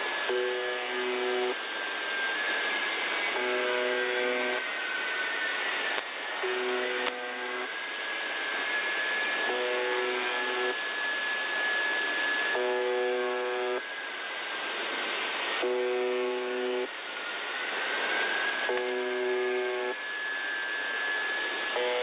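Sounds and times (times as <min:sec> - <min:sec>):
rough radio buzz tone: 0:00.0 - 0:01.6, 0:03.2 - 0:13.9, 0:15.5 - 0:17.0, 0:18.0 - 0:22.0.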